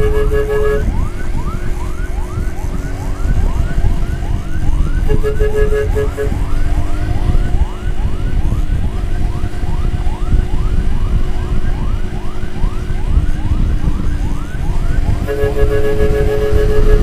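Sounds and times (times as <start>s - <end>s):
steady horn-like tone: 0.0s - 7.7s, 15.2s - 17.0s
emergency siren sweeping: 0.0s - 17.0s
road and wind rumble: 0.0s - 17.0s.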